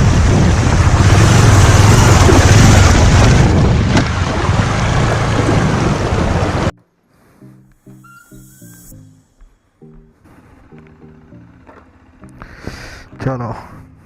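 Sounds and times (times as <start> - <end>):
rushing water: 0.1 - 6.7.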